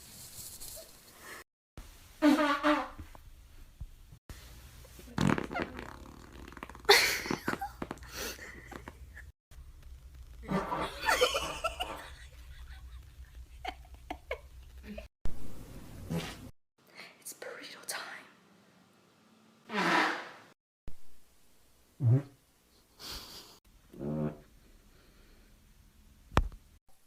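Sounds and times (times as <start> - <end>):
loud farts: 5.1 - 8.0, 10.4 - 11.6, 16.0 - 16.5, 19.6 - 20.5, 22.0 - 22.4, 23.9 - 24.5.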